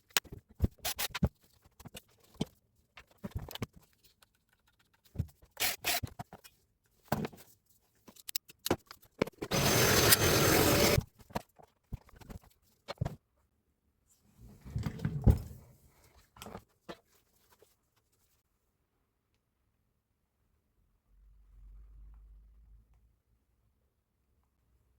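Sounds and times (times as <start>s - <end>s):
tools clicking and scraping: 8.1s - 11.0s
loud steady hiss: 9.5s - 11.0s.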